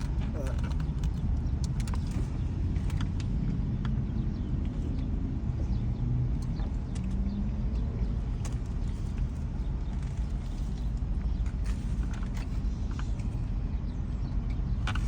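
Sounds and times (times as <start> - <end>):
person eating: 0.0 - 1.2.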